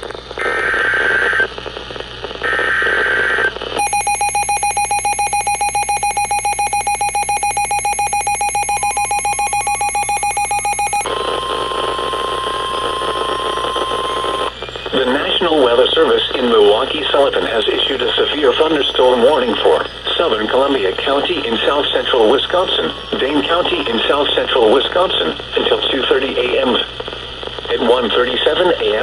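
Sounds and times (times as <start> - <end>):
steady warning alert tone: 3.8 - 24.6
buzzy digital data bursts: 3.8 - 24.8
rapid alarm beeping: 3.8 - 25.2.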